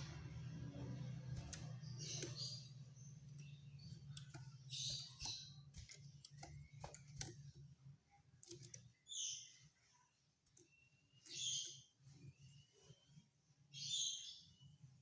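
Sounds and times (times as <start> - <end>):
sharp clicks: 1.3 - 7.6, 8.4 - 9.0
bird harsh rattling calls: 1.4 - 7.3.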